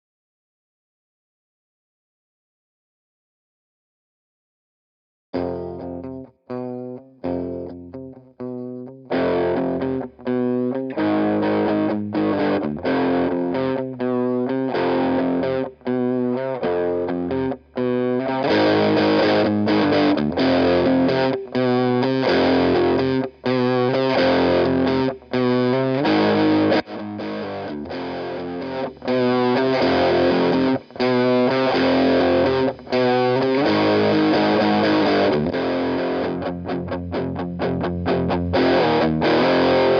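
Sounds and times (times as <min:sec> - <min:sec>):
distorted electric guitar chords: 0:05.4 - 0:39.9.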